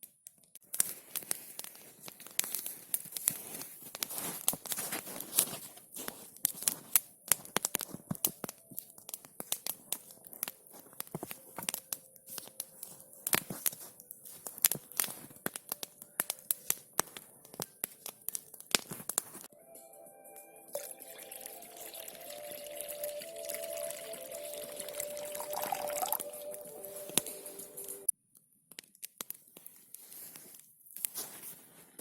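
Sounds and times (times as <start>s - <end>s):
campfire crackling: 0.6s - 19.5s, 20.7s - 28.1s
music: 19.5s - 28.1s.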